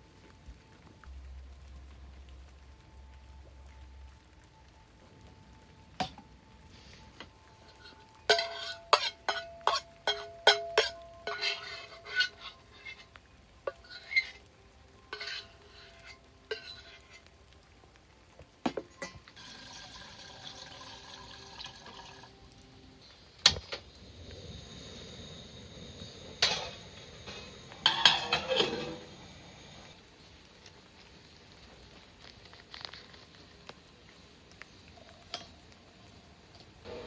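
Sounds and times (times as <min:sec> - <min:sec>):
dishes and cutlery clinking: 0:07.6 - 0:13.1, 0:13.7 - 0:14.4, 0:15.1 - 0:17.2, 0:18.7 - 0:19.4, 0:26.4 - 0:29.2.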